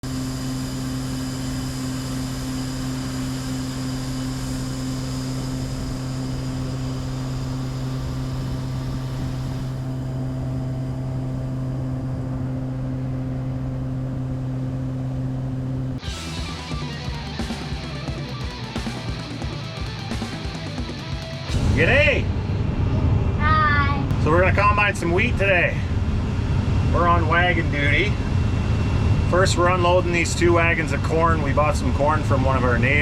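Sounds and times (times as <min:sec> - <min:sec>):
steady engine drone: 0:00.0 - 0:33.0
guitar music: 0:16.0 - 0:22.0.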